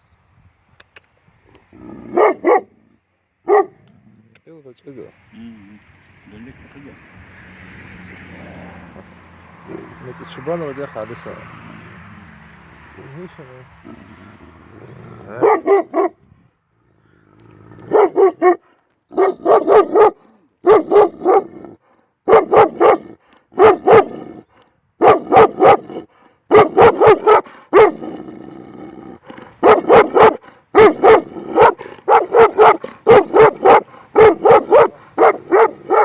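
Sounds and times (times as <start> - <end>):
dog barking loudly: 1.8 - 3.8, 15.3 - 16.2, 17.8 - 36.0.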